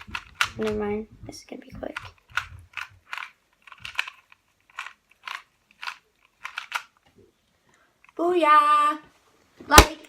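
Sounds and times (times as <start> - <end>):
puzzle cube plastic clicks: 0.0 - 7.1.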